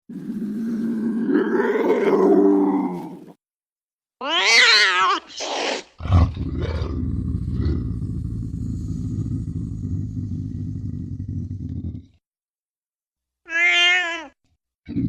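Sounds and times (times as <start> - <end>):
wild cat low rough growl: 0.1 - 3.4, 6.0 - 12.2
wild cat low yowl: 0.2 - 3.3.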